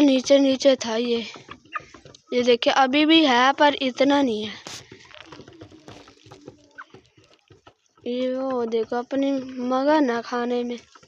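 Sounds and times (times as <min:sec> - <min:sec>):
animals feeding clicks and rustles: 0:00.0 - 0:11.0.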